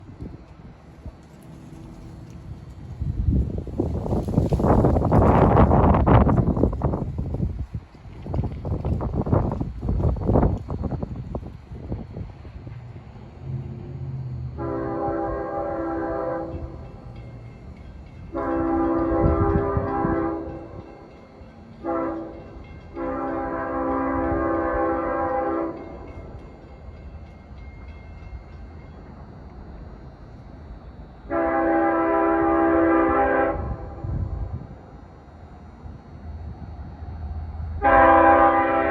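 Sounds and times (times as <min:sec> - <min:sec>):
low train rumble: 0:00.0 - 0:38.9
train air horn blasts: 0:14.4 - 0:16.8, 0:18.3 - 0:20.9, 0:21.8 - 0:26.1, 0:31.3 - 0:34.7, 0:37.7 - 0:38.9.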